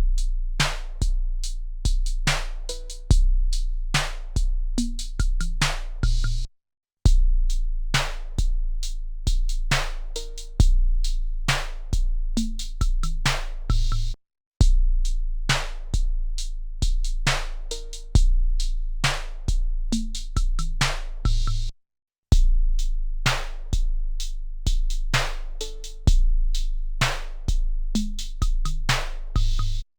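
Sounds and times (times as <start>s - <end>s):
drum machine beat: 1.9s - 3.4s, 4.0s - 6.5s, 9.3s - 14.9s, 15.5s - 21.7s, 24.7s - 29.9s.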